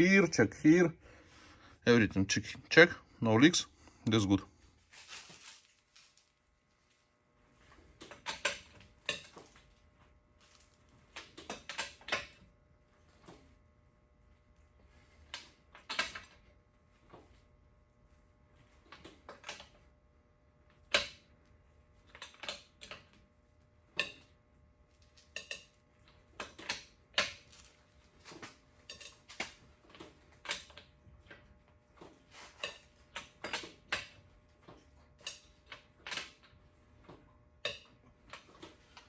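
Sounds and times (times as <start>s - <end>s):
metal tools clinking and knocking: 28.8s - 29.6s.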